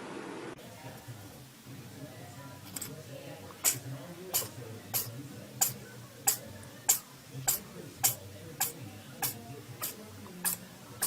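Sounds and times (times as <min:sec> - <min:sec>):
cat sneezing: 0:04.4 - 0:10.6.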